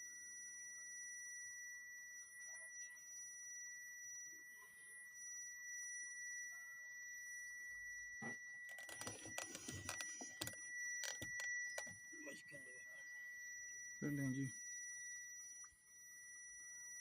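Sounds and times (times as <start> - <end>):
high-pitched whine: 0.0 - 17.0
typing on laptop keyboard: 8.7 - 11.9.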